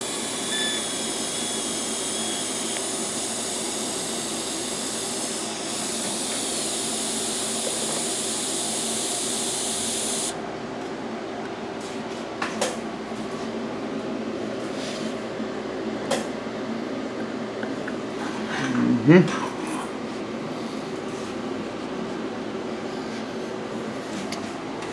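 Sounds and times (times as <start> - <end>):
sharp clicks: 0.0 - 10.3
welding arc hissing: 0.0 - 10.3.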